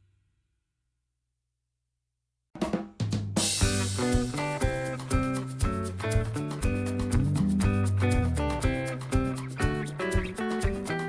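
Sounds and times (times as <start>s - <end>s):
plucked melody with bass and beat: 3.6s - 11.0s.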